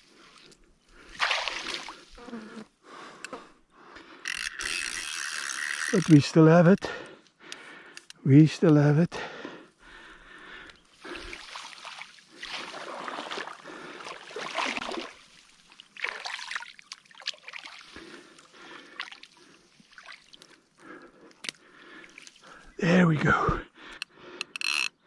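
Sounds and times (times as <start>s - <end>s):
water sloshing and splashing: 0.0s - 2.2s, 10.8s - 20.9s, 21.7s - 22.7s.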